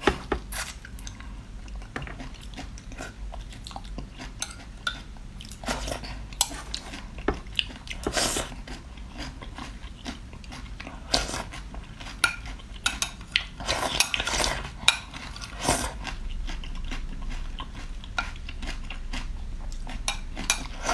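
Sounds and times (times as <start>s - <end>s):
utensils clinking on dishes: 12.2s - 15.6s, 20.1s - 20.9s.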